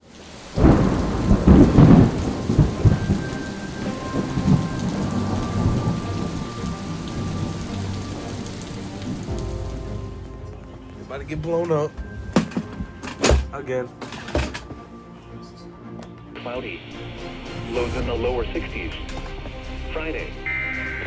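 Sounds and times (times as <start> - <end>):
rain falling: 0.0 - 14.8, 16.9 - 21.0
thunder crack and rumble: 0.5 - 10.3.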